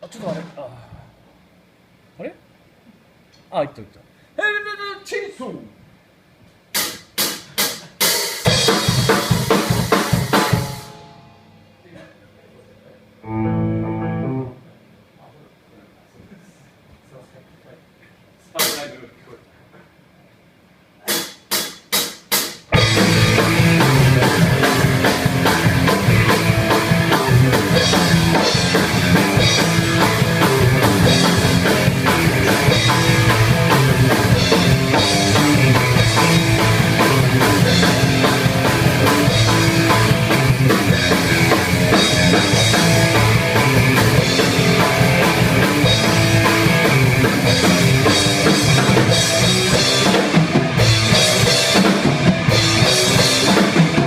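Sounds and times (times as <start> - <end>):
rock band playing: 6.8 - 11.2, 13.2 - 14.6, 21.1 - 54.0.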